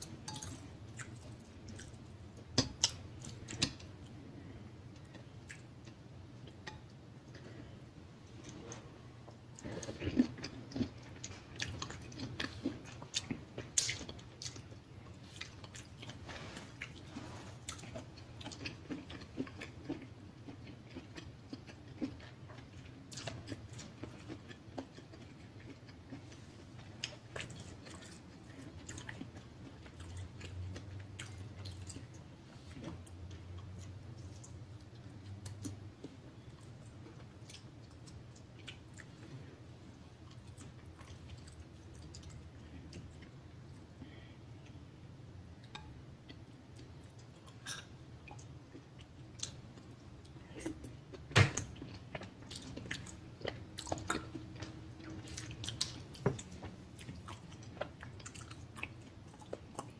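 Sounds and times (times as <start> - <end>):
wet chewing and mouth clicks: 8.4 - 39.3, 45.6 - 59.9.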